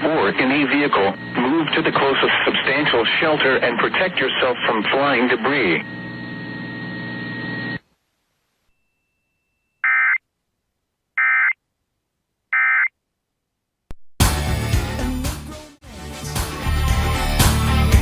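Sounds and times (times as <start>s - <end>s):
broadcast hiss: 0.0s - 8.7s
music: 14.2s - 18.0s.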